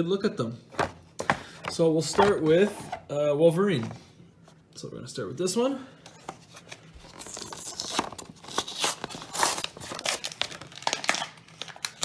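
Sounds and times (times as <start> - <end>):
plastic crinkling: 6.8 - 12.0
cardboard ripping: 7.2 - 11.2.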